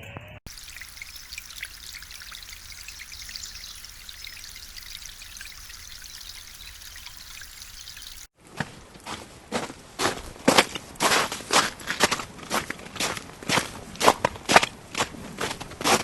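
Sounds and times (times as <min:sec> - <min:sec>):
water trickling and splashing: 0:00.5 - 0:08.4.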